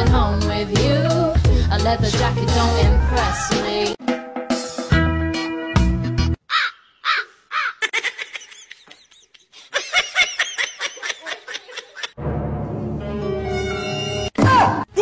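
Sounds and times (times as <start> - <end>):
music: 0.0 - 6.4, 12.2 - 14.8
animal giving harsh calls: 6.4 - 8.6.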